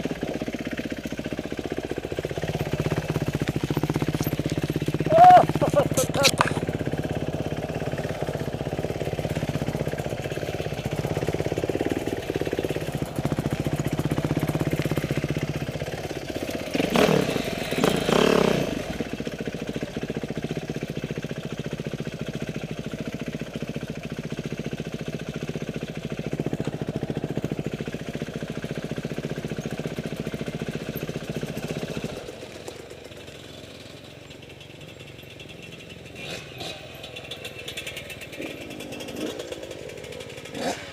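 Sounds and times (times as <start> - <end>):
motorcycle engine revving: 0.0 - 40.9.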